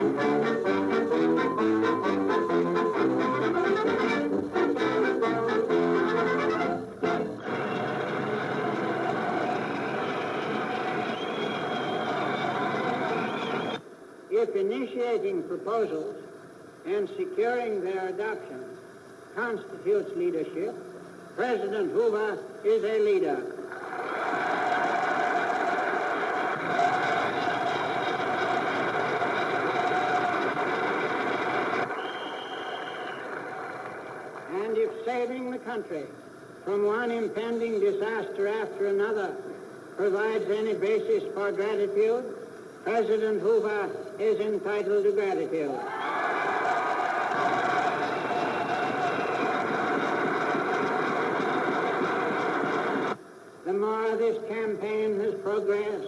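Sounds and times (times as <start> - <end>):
soundtrack hiss: 0.0 - 56.0
large crowd applauding: 7.4 - 13.8, 23.6 - 35.0, 45.8 - 53.2
faint high whistle: 9.9 - 13.8, 31.9 - 33.5.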